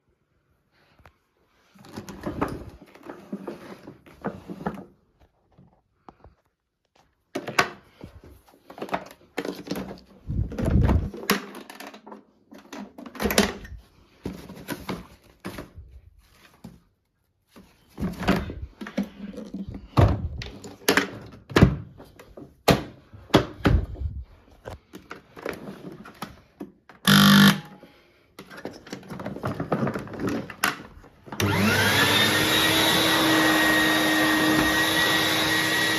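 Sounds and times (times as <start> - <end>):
knocks and clunks of handling: 1.8 - 16.9, 17.5 - 27.0, 28.4 - 31.5
vacuum cleaner motor whine: 27.1 - 27.8, 31.3 - 35.9.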